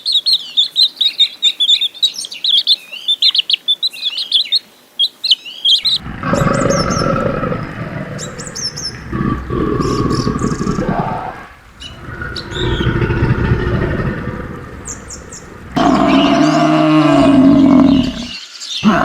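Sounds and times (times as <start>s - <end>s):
birds chirping: 5.7s - 19.0s
large animal long low call: 6.0s - 19.0s.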